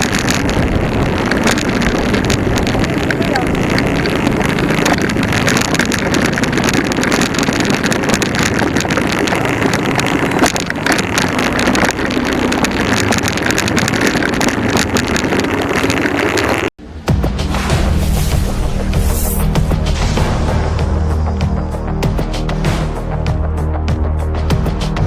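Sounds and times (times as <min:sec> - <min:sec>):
wind buffeting microphone: 0:00.0 - 0:16.7
motorcycle engine running: 0:00.0 - 0:16.8.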